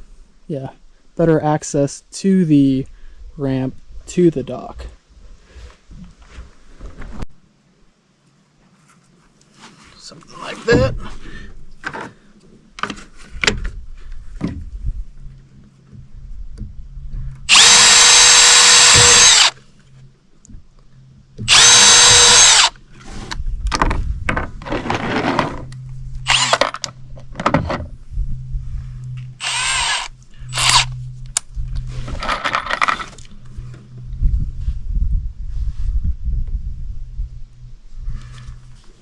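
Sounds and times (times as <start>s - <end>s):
power drill driving screws into wood: 17.5s - 19.6s, 21.5s - 22.8s, 26.3s - 26.7s, 29.4s - 30.9s.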